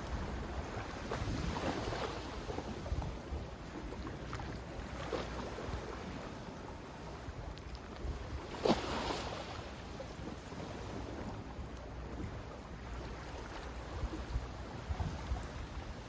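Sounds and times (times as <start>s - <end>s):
sea water lapping and splashing: 0.0s - 16.0s
wind rumble on microphone: 0.0s - 16.0s.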